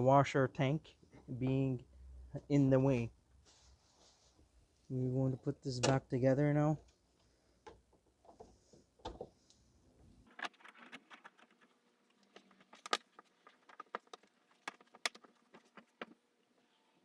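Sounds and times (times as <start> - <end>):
plastic clicks and rattles: 10.3 - 16.2.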